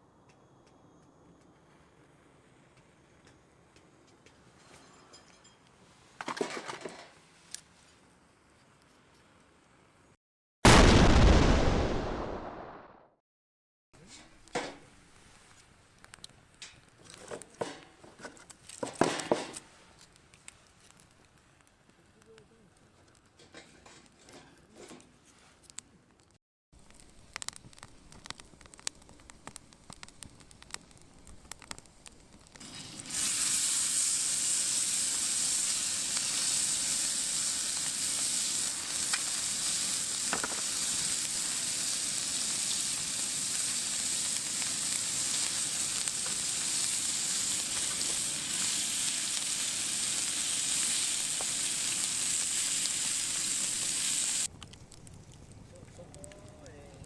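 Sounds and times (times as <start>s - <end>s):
food sizzling in a pan: 32.5s - 54.5s.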